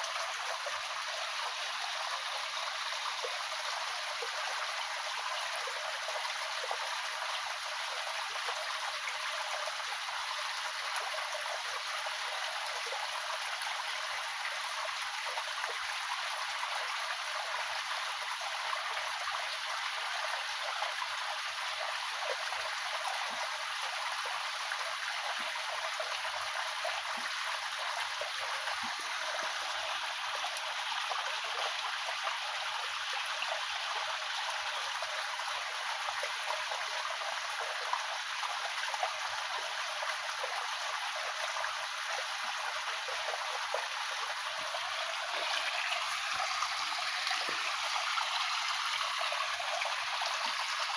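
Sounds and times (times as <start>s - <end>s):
running water flowing: 21.1s - 50.9s.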